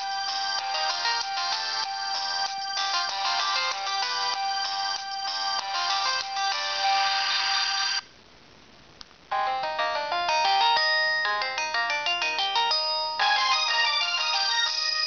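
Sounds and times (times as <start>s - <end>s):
polyphonic phone ringtone: 0.0s - 8.0s, 9.3s - 15.0s.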